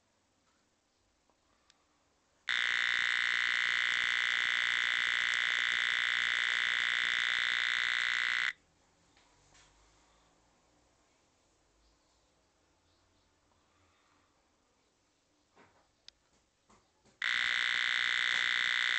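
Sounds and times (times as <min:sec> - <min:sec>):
harsh fluttering electronic alarm: 0:02.5 - 0:08.6, 0:17.2 - 0:18.9.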